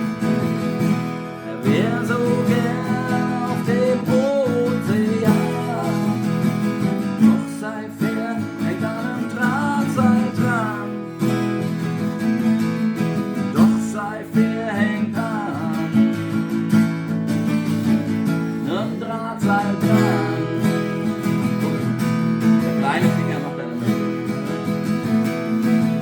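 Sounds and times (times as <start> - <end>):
strummed acoustic guitar: 0.0 - 26.0
person singing: 1.3 - 11.7, 13.4 - 16.5, 18.6 - 21.9.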